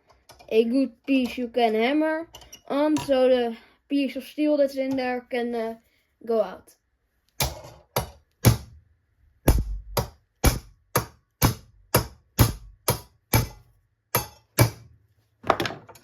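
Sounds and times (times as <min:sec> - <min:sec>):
hammer striking metal: 0:07.4 - 0:08.7, 0:09.5 - 0:14.8.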